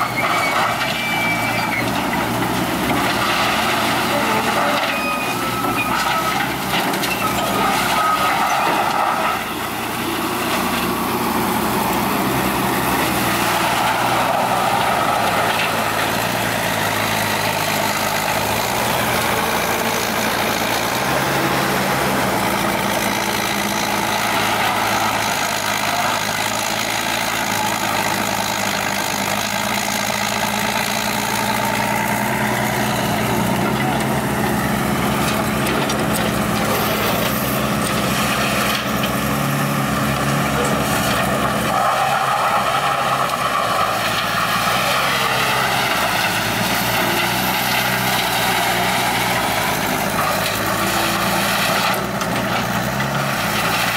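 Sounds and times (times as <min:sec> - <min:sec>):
short high squeals: 0:00.0 - 0:02.0, 0:04.7 - 0:06.4
diesel engine drone: 0:00.0 - 0:53.9
wood grinder shredding: 0:00.0 - 0:53.9.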